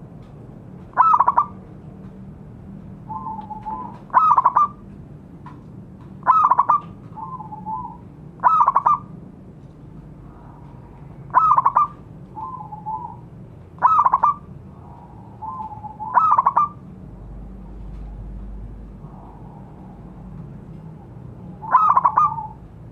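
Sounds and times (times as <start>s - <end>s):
doves cooing in trills: 0.9s - 1.6s, 2.9s - 4.9s, 6.2s - 9.2s, 10.1s - 17.0s, 17.6s - 22.9s.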